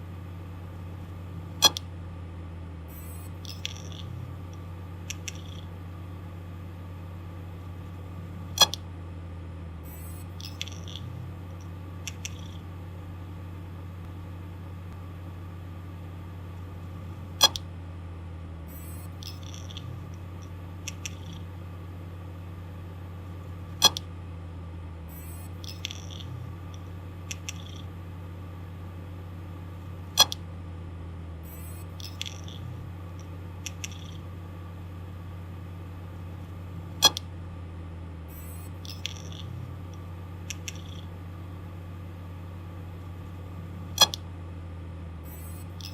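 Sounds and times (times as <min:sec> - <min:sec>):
hard disk drive spinning hum: 0:00.0 - 0:45.9
hard drive head clicking: 0:03.4 - 0:05.7, 0:08.5 - 0:08.8, 0:17.4 - 0:17.7, 0:23.8 - 0:24.1, 0:30.2 - 0:30.4, 0:32.0 - 0:34.2, 0:37.0 - 0:37.3, 0:44.0 - 0:44.2, 0:45.7 - 0:45.9.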